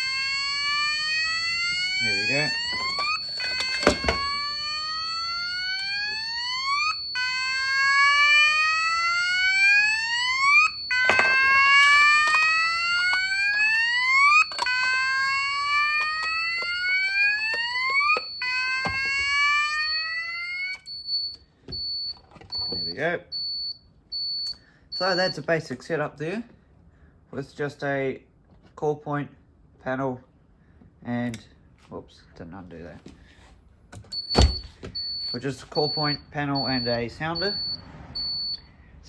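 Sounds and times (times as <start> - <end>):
fire alarm rising whoop: 0.0 - 21.4.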